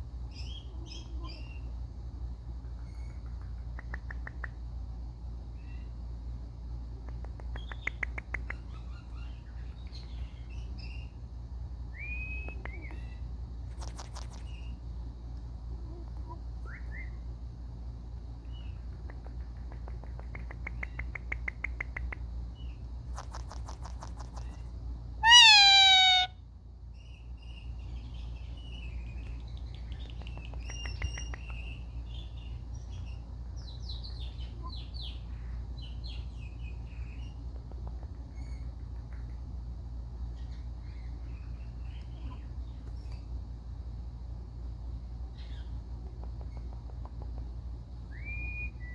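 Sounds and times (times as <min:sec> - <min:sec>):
faint low hum: 0:00.0 - 0:48.9
parakeet chatter and clicking: 0:02.7 - 0:04.7, 0:07.0 - 0:10.4, 0:12.5 - 0:14.8, 0:18.5 - 0:26.3, 0:28.8 - 0:33.1, 0:45.4 - 0:47.8
parakeet squawk: 0:25.2 - 0:26.4.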